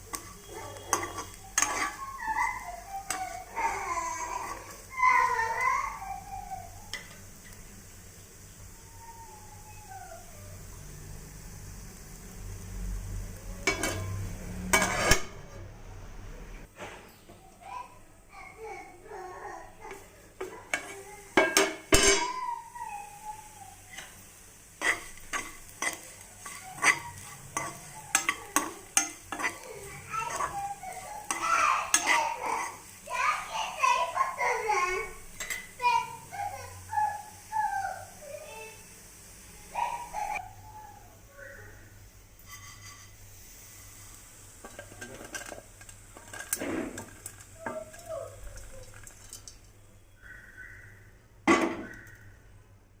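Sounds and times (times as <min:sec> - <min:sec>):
utensil scraping a pan: 0:00.0 - 0:04.9, 0:13.6 - 0:15.7, 0:19.9 - 0:22.4, 0:24.8 - 0:32.9, 0:42.4 - 0:43.3, 0:44.6 - 0:49.4
faint sizzle: 0:00.0 - 0:53.0.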